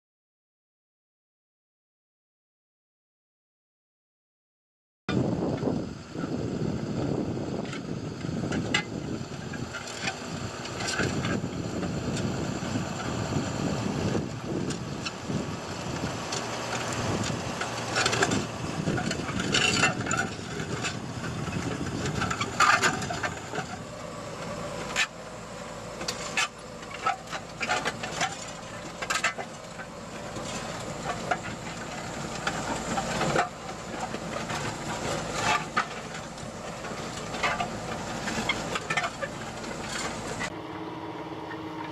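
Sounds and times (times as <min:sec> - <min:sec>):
tractor rumbling drone: 0:05.1 - 0:41.9
discs cutting soil: 0:08.5 - 0:41.9.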